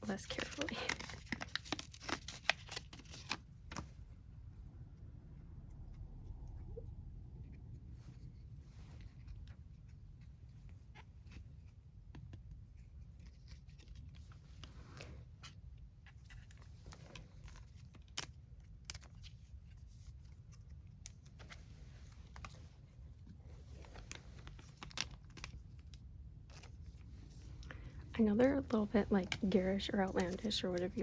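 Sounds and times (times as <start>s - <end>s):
packaging rustling and tearing: 0.1s - 3.9s, 23.6s - 27.9s.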